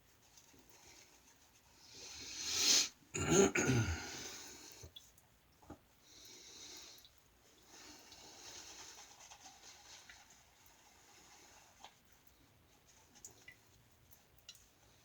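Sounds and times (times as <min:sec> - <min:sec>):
man sneezing: 0:03.2 - 0:04.2.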